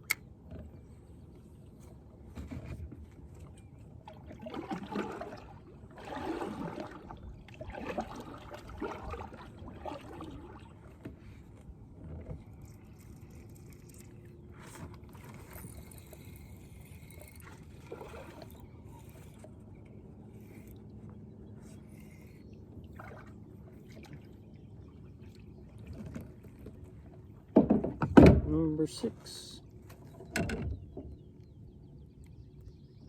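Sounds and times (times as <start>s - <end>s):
water splashing and trickling: 1.6s - 31.0s
scraping against boat: 2.2s - 3.7s.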